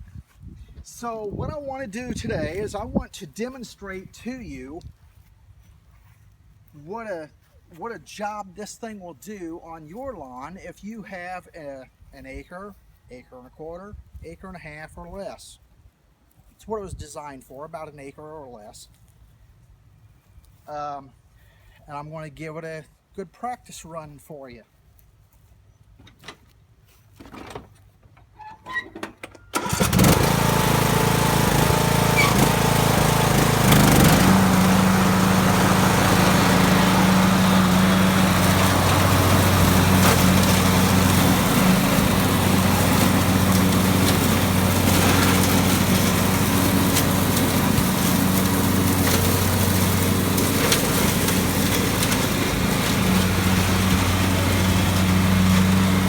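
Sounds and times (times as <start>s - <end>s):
lawn mower engine running: 29.5s - 56.0s.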